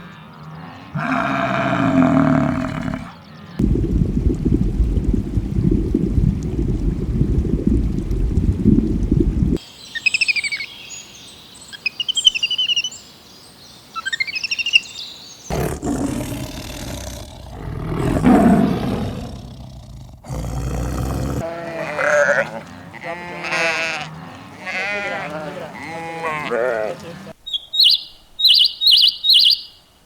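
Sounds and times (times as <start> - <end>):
animal low roar: 0.3 - 3.2, 15.5 - 27.3
sheep bleating: 21.4 - 27.4
high trilling bird calls: 27.4 - 29.9.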